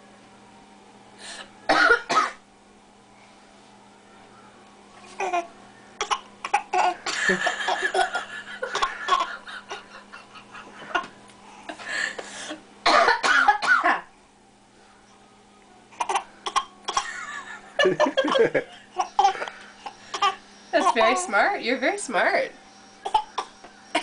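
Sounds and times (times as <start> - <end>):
baby fake coughing: 1.7 - 2.4, 6.0 - 9.3, 12.8 - 14.0, 16.0 - 17.3, 18.3 - 21.0, 23.0 - 24.0
baby laughing: 17.0 - 21.1.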